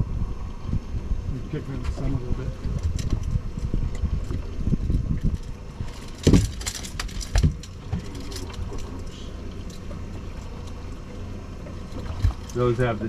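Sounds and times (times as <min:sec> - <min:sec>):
boat rumble: 0:00.0 - 0:13.0
wind: 0:00.0 - 0:13.0
knocks and clatter on boat: 0:01.7 - 0:13.0
faint voices: 0:07.9 - 0:10.6.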